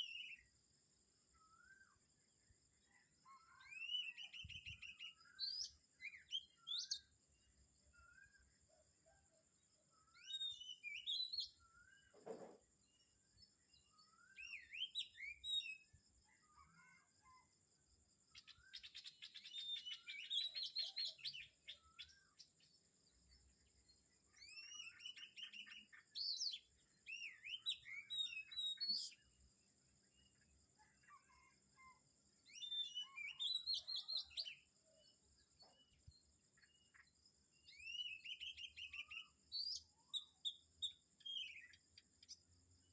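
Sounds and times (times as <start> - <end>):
birds chirping and whistling: 32.6 - 34.6.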